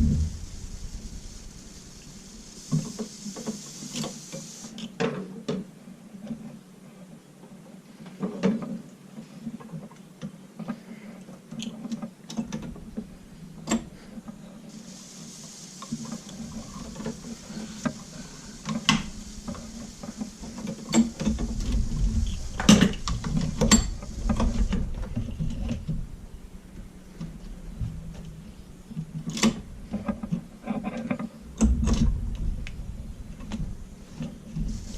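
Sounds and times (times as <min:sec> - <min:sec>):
low hum: 0:00.0 - 0:03.5, 0:31.4 - 0:34.9.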